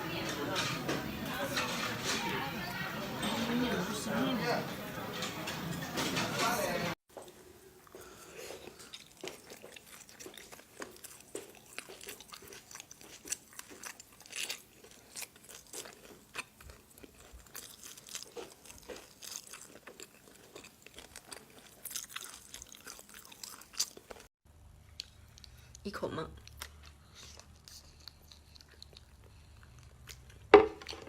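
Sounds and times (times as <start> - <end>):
person chewing crunchy food: 7.2 - 31.0.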